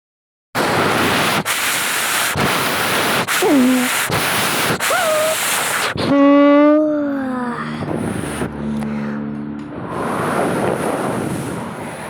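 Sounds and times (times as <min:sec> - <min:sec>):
wind noise on microphone: 0:00.6 - 0:06.1, 0:09.7 - 0:12.0.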